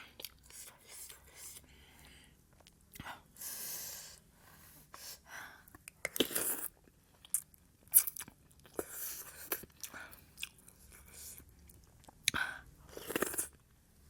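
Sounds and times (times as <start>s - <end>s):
person chewing with wet smacks: 5.7s - 12.4s.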